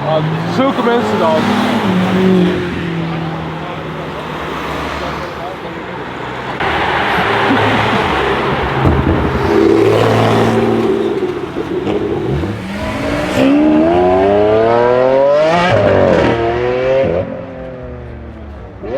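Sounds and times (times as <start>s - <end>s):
car engine accelerating hard: 6.5s - 18.9s.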